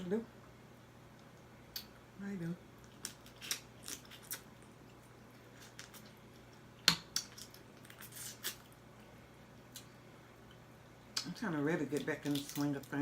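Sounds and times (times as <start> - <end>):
crab shells cracking: 2.8 - 8.6, 12.0 - 12.9
wet squishing: 11.9 - 13.0.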